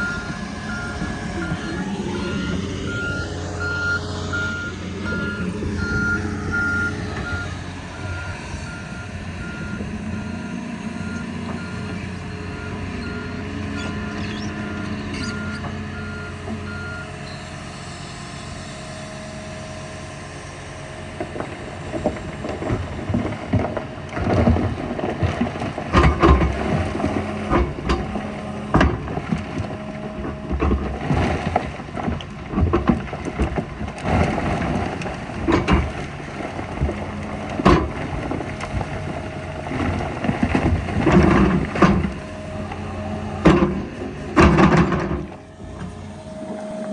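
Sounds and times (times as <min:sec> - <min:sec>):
backup alarm beeping: 0:00.0 - 0:11.9
diesel machine running: 0:00.0 - 0:46.9
loud knocks and rumble: 0:21.2 - 0:42.4, 0:43.3 - 0:46.0.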